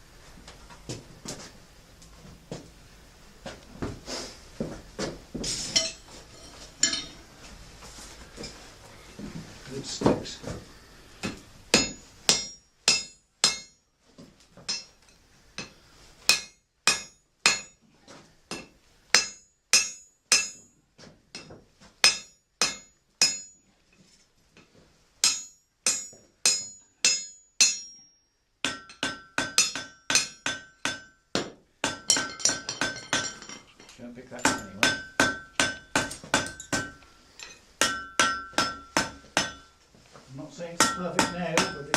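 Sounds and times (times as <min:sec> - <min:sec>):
anvil ringing: 0:06.8 - 0:07.2, 0:11.7 - 0:13.8, 0:18.6 - 0:20.7, 0:21.4 - 0:23.6, 0:25.2 - 0:31.2, 0:34.4 - 0:39.7, 0:40.8 - 0:41.9
hammer striking iron on anvil: 0:06.8 - 0:07.2, 0:11.2 - 0:13.8, 0:14.7 - 0:15.0, 0:15.6 - 0:17.8, 0:18.5 - 0:20.7, 0:21.3 - 0:23.6, 0:25.2 - 0:33.6, 0:34.4 - 0:39.7, 0:40.8 - 0:41.9.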